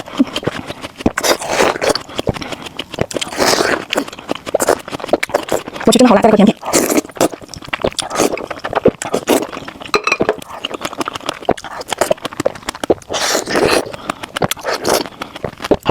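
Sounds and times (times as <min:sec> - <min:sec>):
wet chewing and mouth smacks: 0:00.0 - 0:15.9.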